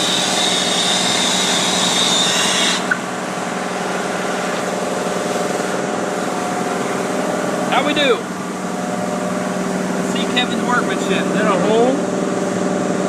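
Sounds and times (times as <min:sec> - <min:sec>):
brazing torch hissing: 0:00.0 - 0:03.0
steady mechanical hum: 0:00.0 - 0:13.0.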